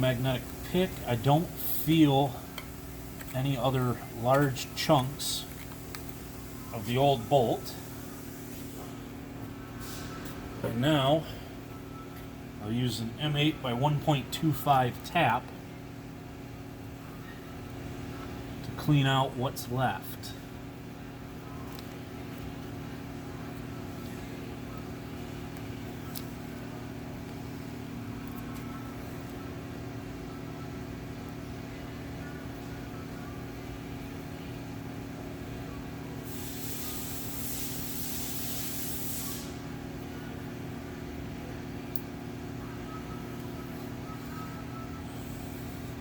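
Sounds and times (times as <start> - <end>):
steady machine hum: 0.0 - 46.0
hiss: 36.2 - 39.7.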